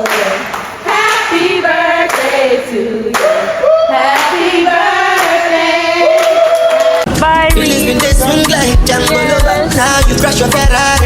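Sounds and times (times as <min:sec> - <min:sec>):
sharp claps: 0:00.0 - 0:01.3, 0:02.1 - 0:02.4, 0:03.1 - 0:04.4
people singing together: 0:00.0 - 0:11.0.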